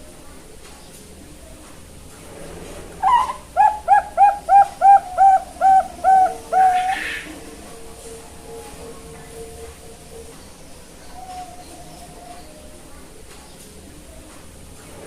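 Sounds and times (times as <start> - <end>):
dove cooing: 3.0 - 13.0.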